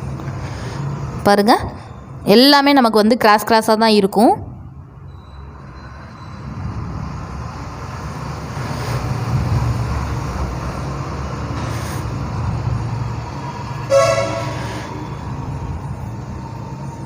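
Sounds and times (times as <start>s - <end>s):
road traffic rumble: 0.0s - 17.0s
loud pitched horn blast: 13.8s - 15.2s.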